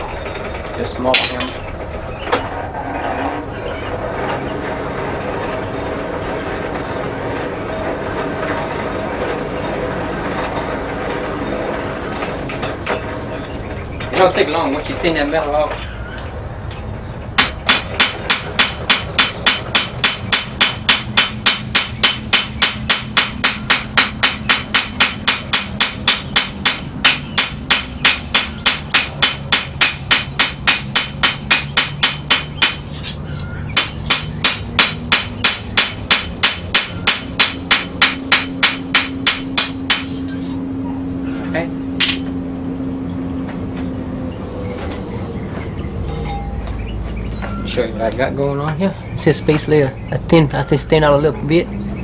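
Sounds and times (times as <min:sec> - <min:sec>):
low steady hum: 0:00.0 - 0:52.0
hammer striking steel on anvil: 0:01.1 - 0:01.6, 0:17.4 - 0:32.9, 0:33.8 - 0:40.6, 0:42.0 - 0:42.4, 0:46.1 - 0:46.6.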